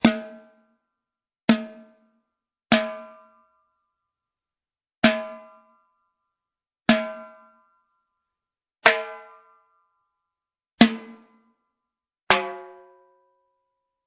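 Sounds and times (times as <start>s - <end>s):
pitched drum hits: 0.0s - 0.5s.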